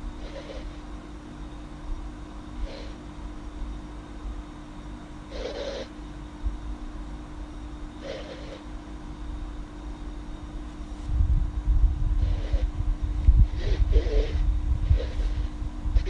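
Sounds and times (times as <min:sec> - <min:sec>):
steady low hum: 0:00.0 - 0:16.0
girl snoring: 0:05.3 - 0:05.9, 0:08.0 - 0:08.7, 0:13.4 - 0:16.0.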